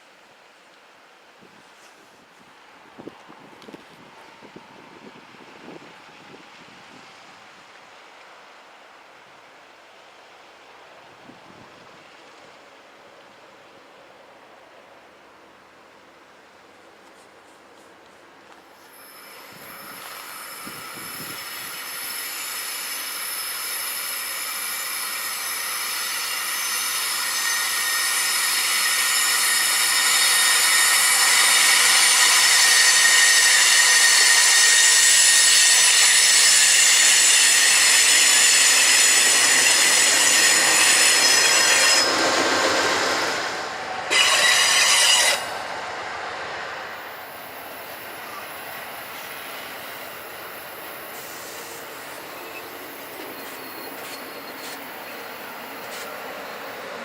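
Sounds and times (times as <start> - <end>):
rumbling rail noise: 0.0 - 57.0
train wheels squealing: 18.7 - 45.9, 46.8 - 57.0.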